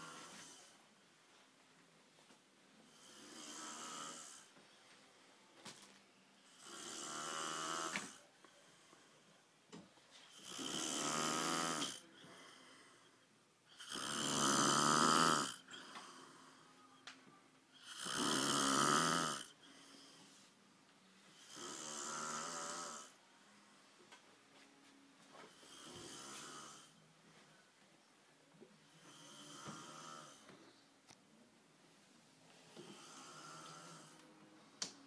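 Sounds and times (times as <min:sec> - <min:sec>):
quiet breaths: 0:00.0 - 0:18.6, 0:19.3 - 0:35.0
person snoring loudly: 0:02.9 - 0:04.5, 0:06.6 - 0:08.2, 0:10.4 - 0:12.0, 0:13.8 - 0:15.6, 0:17.8 - 0:19.6, 0:21.4 - 0:23.2, 0:25.6 - 0:26.9, 0:29.0 - 0:30.4, 0:32.8 - 0:34.2.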